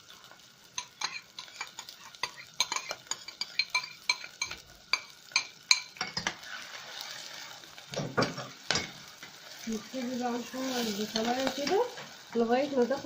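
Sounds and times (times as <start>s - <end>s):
onion sizzling in oil: 0.0s - 13.0s
spoon scraping against pot: 0.8s - 7.5s.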